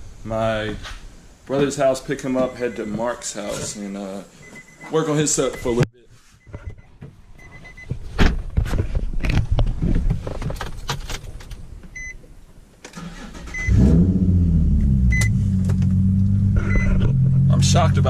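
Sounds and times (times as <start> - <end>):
car engine starting and idling: 12.8 - 18.0.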